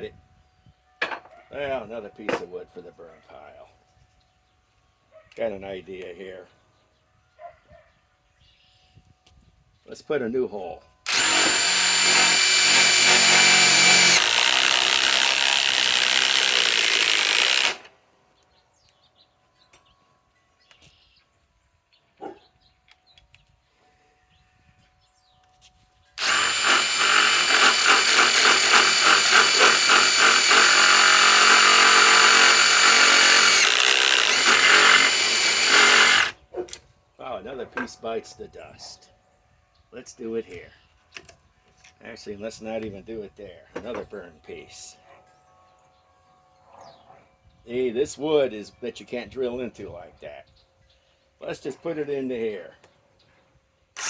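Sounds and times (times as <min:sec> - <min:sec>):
cordless impact wrench hammering: 0:11.1 - 0:17.9, 0:26.2 - 0:36.4.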